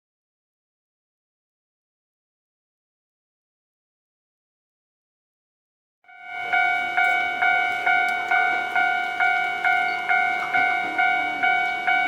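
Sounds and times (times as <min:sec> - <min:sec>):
level crossing warning bell: 0:06.1 - 0:12.0.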